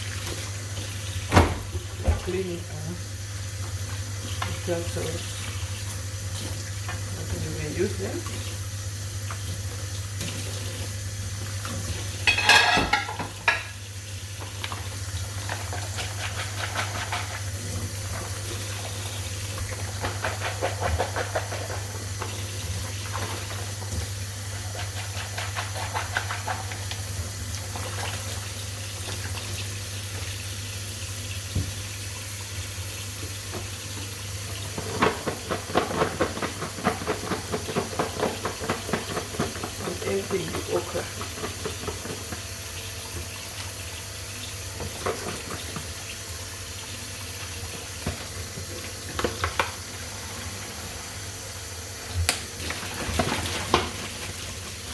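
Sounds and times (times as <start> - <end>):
tap water running: 0.0 - 54.9
dishes clinking and clattering: 12.2 - 13.8.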